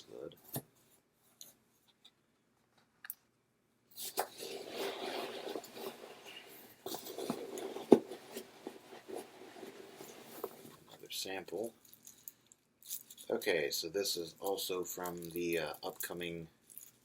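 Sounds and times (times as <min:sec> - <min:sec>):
packaging rustling and crinkling: 0:04.0 - 0:11.0.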